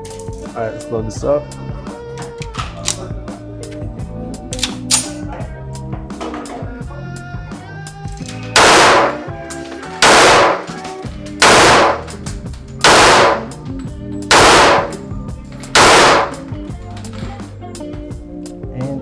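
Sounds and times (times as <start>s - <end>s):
pistol shots: 4.6s - 5.2s, 8.6s - 9.4s, 10.0s - 13.6s, 14.3s - 15.1s, 15.8s - 16.5s.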